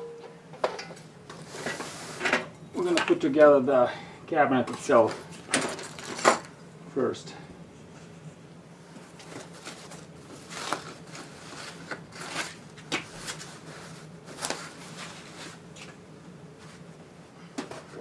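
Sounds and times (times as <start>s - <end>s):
faint steady hum: 0.0s - 18.0s
packaging rustling: 9.2s - 15.6s.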